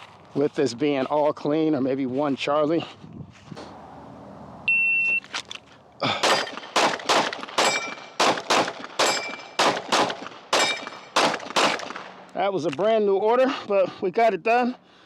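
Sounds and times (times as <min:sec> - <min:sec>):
shot timer beep: 0:04.7 - 0:05.2
pistol shots: 0:06.1 - 0:12.4
steel target plate ringing: 0:07.6 - 0:08.2, 0:09.0 - 0:09.6, 0:10.5 - 0:11.2.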